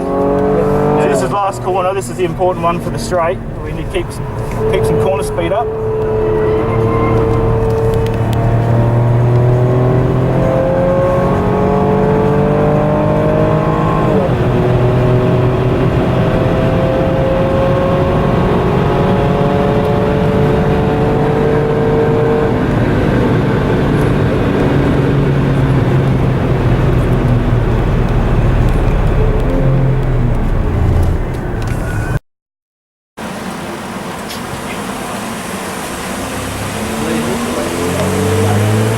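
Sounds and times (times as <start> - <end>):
car engine accelerating: 0.0 - 32.2, 33.2 - 38.9.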